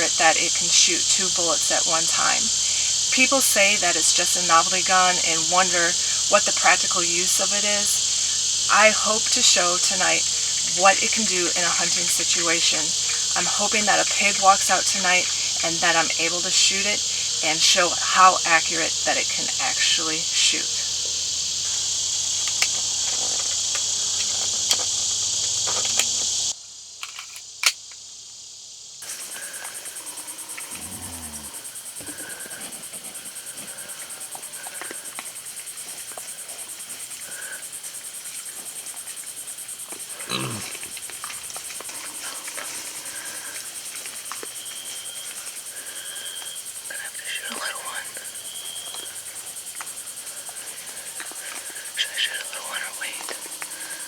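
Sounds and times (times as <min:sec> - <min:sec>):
night insects chorus: 0:00.0 - 0:54.0
faint calls: 0:29.0 - 0:35.3, 0:41.8 - 0:54.0.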